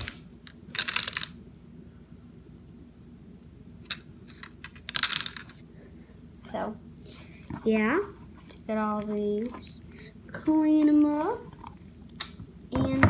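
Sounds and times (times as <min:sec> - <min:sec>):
small beads clattering: 0:00.7 - 0:01.4, 0:04.4 - 0:05.6.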